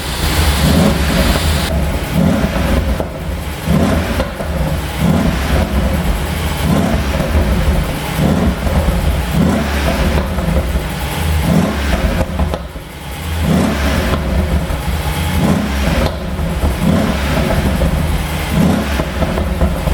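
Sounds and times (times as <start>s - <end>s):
car engine revving: 0.0s - 19.9s
exhaust crackling pops: 0.0s - 19.9s.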